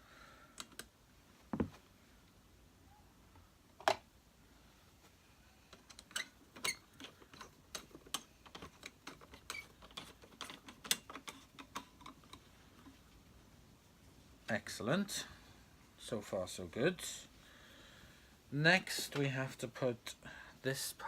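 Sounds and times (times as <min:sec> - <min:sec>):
plastic parts clicking together: 0:00.6 - 0:00.9, 0:05.7 - 0:12.5.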